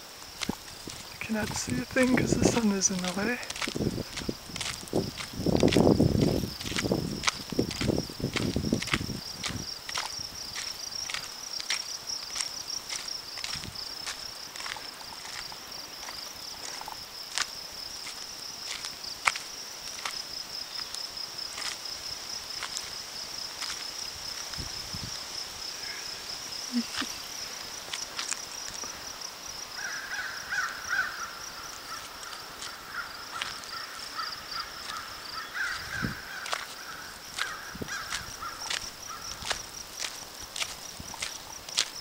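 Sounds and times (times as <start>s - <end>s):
footsteps: 0.0s - 25.1s, 26.0s - 29.2s, 31.7s - 42.0s
high-pitched insect trill: 0.0s - 42.0s
bird calling: 29.8s - 39.4s.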